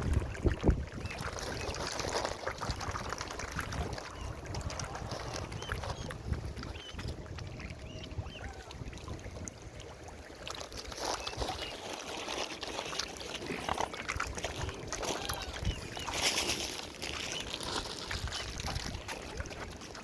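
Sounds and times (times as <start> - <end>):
water splashing: 0.0 - 20.0
birds chirping: 5.5 - 8.7.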